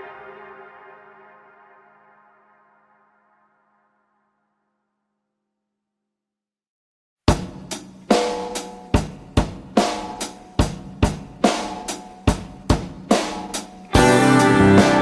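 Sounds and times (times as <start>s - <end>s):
drum kit beat: 7.3s - 15.0s
band with bass and chords: 13.9s - 15.0s.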